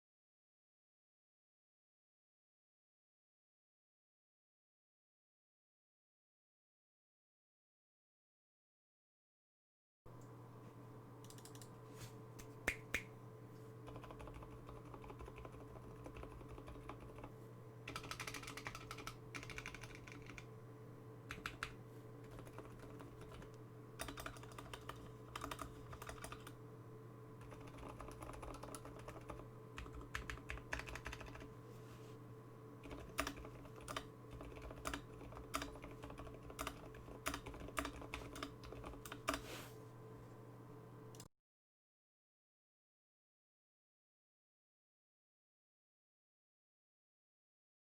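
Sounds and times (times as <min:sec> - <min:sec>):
steady low hum: 0:10.1 - 0:41.3
mechanical keyboard typing: 0:11.2 - 0:11.7, 0:13.9 - 0:17.3, 0:17.9 - 0:20.5, 0:21.3 - 0:26.6, 0:27.4 - 0:31.5, 0:32.8 - 0:39.4.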